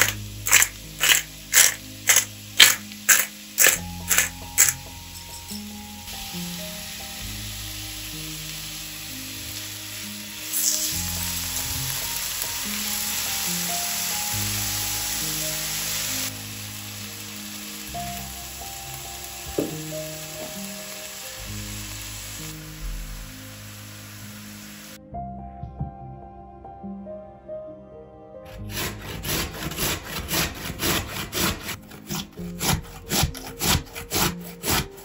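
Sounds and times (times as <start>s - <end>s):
background music with low notes: 0.0s - 35.0s
steady hiss: 15.3s - 25.0s.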